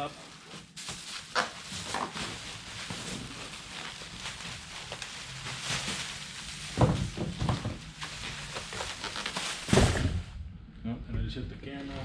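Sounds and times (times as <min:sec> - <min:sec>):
packing material rustling: 0:00.0 - 0:10.4
dull thumps: 0:09.7 - 0:10.5.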